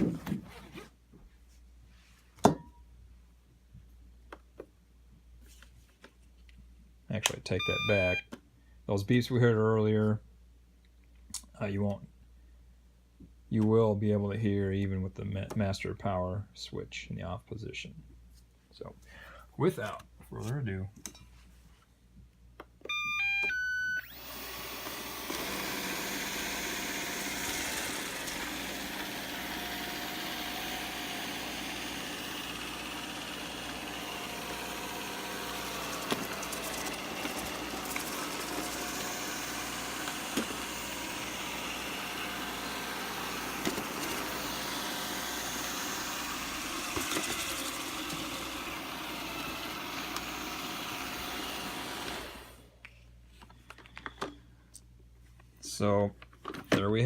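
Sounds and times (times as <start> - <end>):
vacuum bumping into things: 0.0 - 0.6
robot vacuum beeps: 7.6 - 8.2, 22.9 - 24.4
robot vacuum motors whirring: 22.9 - 52.6.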